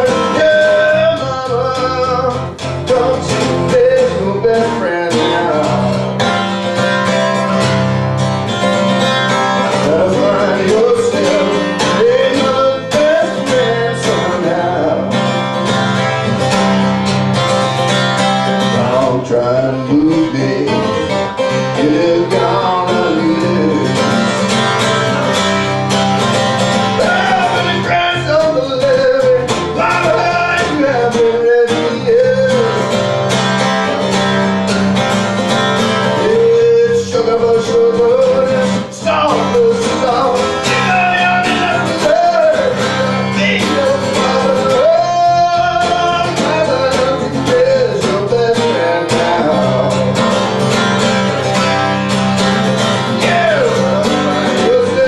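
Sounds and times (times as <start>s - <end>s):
plucked acoustic guitar: 0.0s - 55.0s
sliding lead melody: 0.0s - 55.0s.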